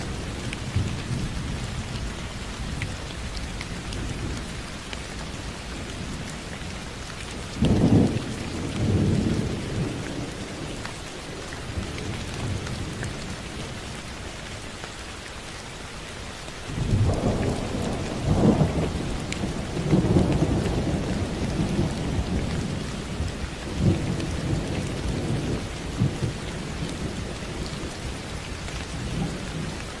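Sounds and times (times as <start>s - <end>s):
steady rain falling: 0.0s - 30.0s
thunder rumbling: 16.8s - 27.9s.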